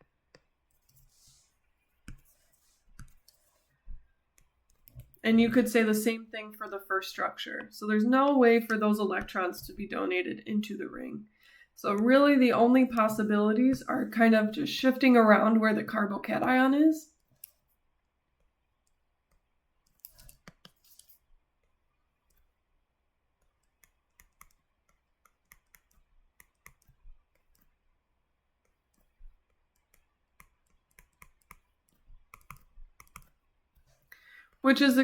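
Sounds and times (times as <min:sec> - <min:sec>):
stylus clicks and taps: 0:18.9 - 0:21.1, 0:23.4 - 0:27.7, 0:28.6 - 0:33.4.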